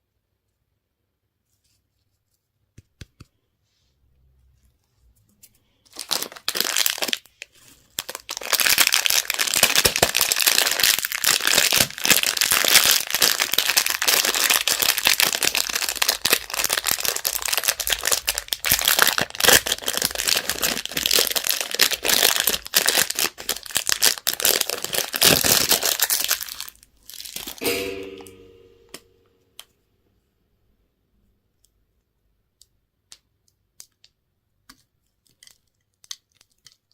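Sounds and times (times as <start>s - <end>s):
wrapper crinkling: 5.8s - 27.6s, 34.7s - 36.9s.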